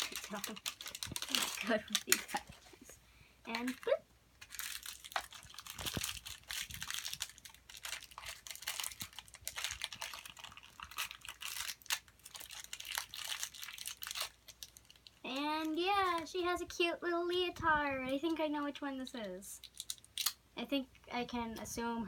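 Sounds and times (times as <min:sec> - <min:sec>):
plastic packaging crinkling: 0:00.0 - 0:02.8, 0:03.5 - 0:16.3, 0:19.1 - 0:20.4.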